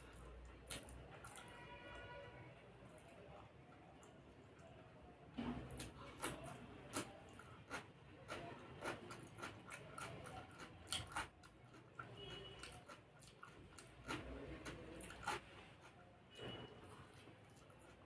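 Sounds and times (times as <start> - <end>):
soft food crunches: 5.7 - 16.0
person chewing with mouth clicks: 5.8 - 16.0.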